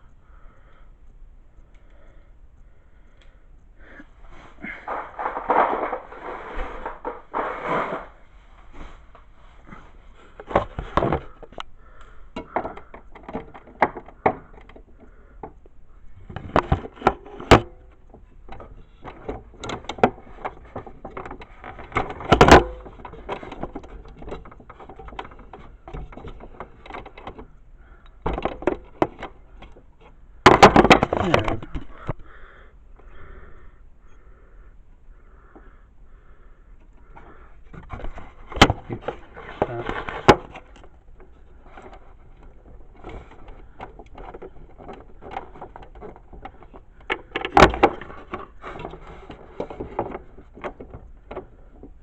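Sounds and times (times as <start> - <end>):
hand tools and metal parts clattering: 4.3 - 8.2, 36.8 - 52.0.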